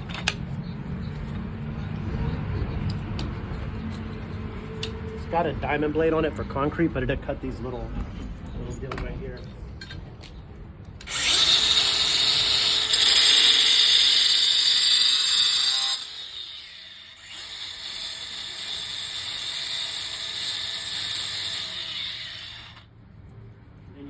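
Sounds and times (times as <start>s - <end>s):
angle grinder cutting metal: 11.0s - 22.9s.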